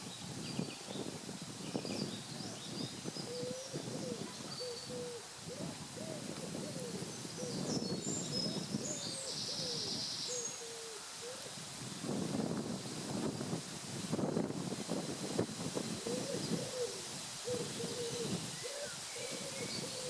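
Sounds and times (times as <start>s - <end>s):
small birds chirping faintly: 0.0s - 11.6s
birds hooting: 3.2s - 11.4s, 16.0s - 20.0s.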